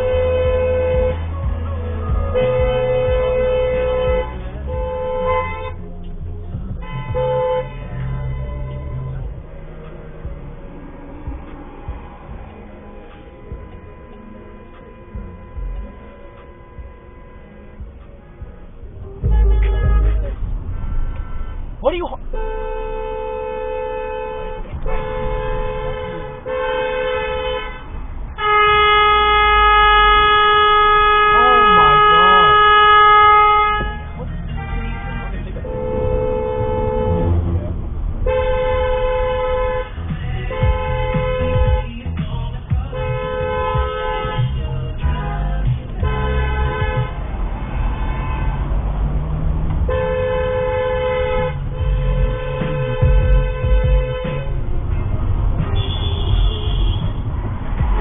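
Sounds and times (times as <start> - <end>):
car horn honking: 0.0 - 58.0
louder horn: 0.0 - 58.0
road and engine rumble: 0.0 - 58.0.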